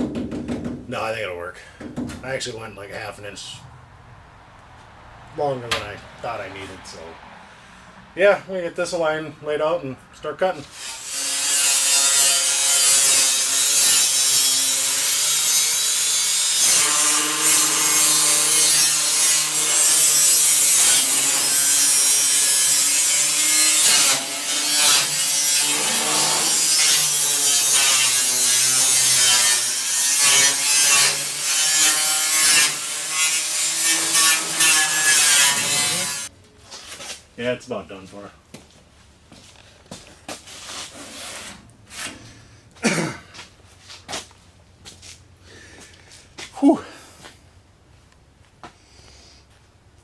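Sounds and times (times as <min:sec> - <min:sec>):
angle grinder cutting sheet metal: 0:10.7 - 0:36.3.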